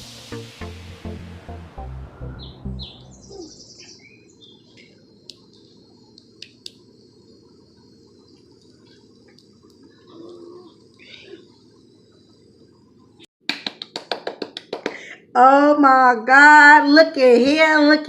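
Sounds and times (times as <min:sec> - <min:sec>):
bird chirp: 0:02.1 - 0:05.0
insects chirring: 0:03.2 - 0:13.3.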